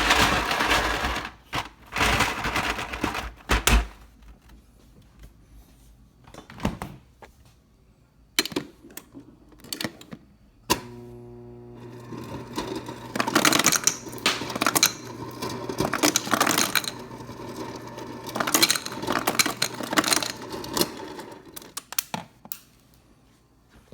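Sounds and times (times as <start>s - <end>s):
ice dispenser motor humming: 0.0s - 3.2s, 10.7s - 21.8s
ice clattering through chute: 0.0s - 3.8s, 11.9s - 21.4s.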